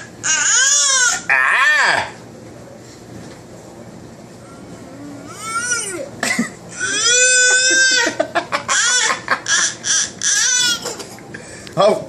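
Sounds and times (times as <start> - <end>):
young child squealing and crying: 0.2 - 2.2, 6.8 - 10.9.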